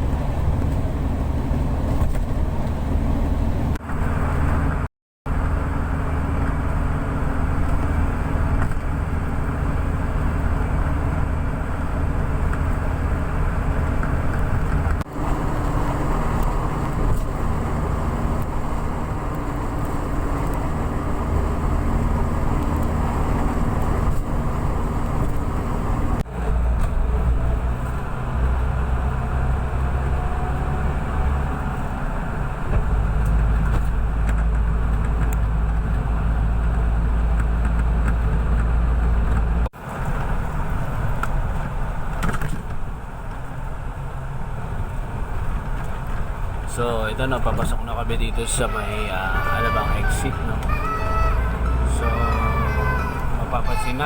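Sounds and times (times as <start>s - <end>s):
vehicle engine and tyres rumbling: 0.0s - 54.0s.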